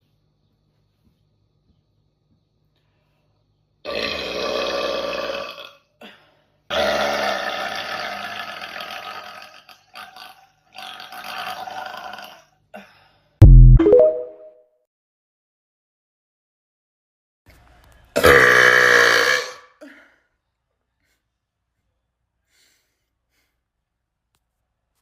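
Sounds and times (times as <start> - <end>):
woman burping: 18.2 - 19.7.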